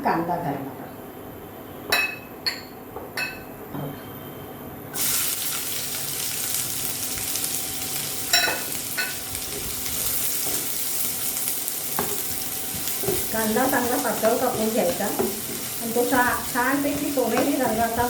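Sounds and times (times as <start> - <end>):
onion sizzling in hot oil: 5.0 - 18.0
metal utensil clinking on pan: 8.4 - 9.2.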